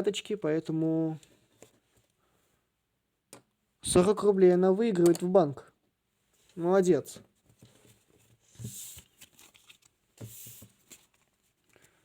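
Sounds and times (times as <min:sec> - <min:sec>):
paper rustling: 0:07.5 - 0:12.0.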